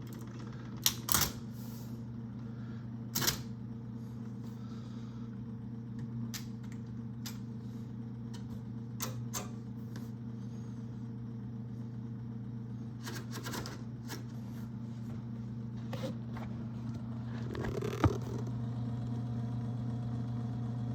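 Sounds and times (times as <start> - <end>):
electric typewriter motor hum: 0.0 - 2.0, 3.1 - 3.6, 12.8 - 14.4, 15.8 - 20.9
typewriter mechanism clicks: 3.1 - 3.5.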